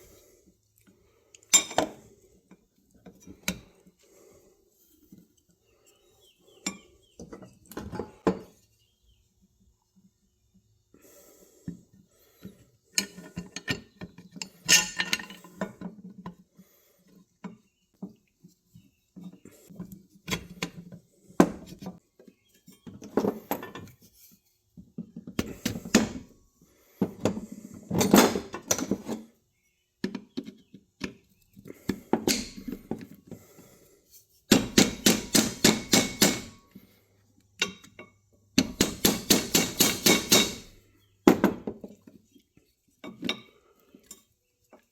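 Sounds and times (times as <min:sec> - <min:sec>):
metal tools clinking: 0:14.4 - 0:15.6.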